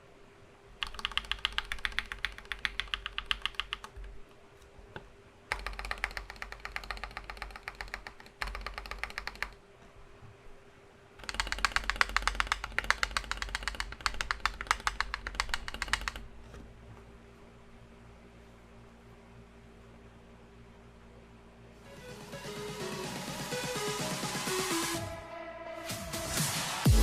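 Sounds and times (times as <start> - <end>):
typing on mechanical keyboard: 0.8 - 4.1, 5.5 - 9.6, 11.2 - 16.2.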